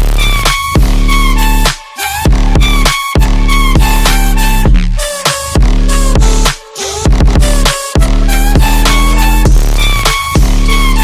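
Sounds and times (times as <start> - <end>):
kick drum hits: 0.0 - 1.0, 2.3 - 4.0, 5.6 - 6.4, 7.1 - 8.8, 9.5 - 10.6
electronic dance music: 0.0 - 11.0.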